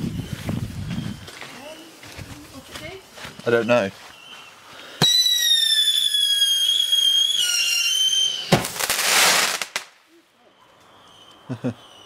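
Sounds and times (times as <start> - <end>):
firework shrill whistle: 5.0 - 9.9
firework crack: 5.0 - 10.1.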